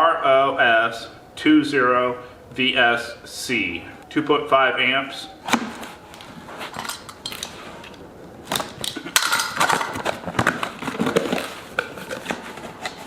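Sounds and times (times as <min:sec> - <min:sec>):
cardboard packaging crinkling: 0:05.6 - 0:13.0.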